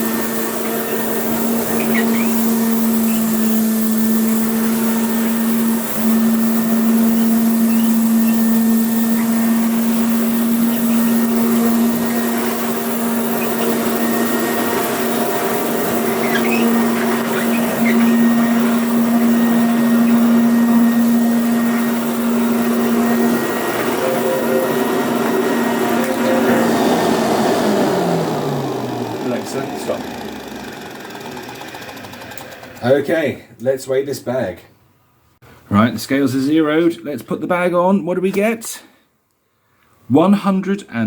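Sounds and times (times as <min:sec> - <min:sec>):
vacuum cleaner running: 0:00.0 - 0:32.8.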